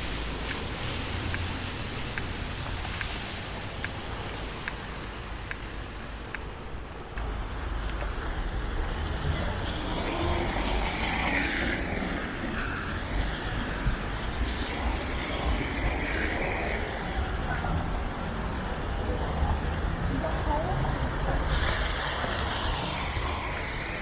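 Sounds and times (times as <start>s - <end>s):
heavy vehicle rumble: 0.0s - 24.0s
faint footsteps: 0.3s - 8.2s.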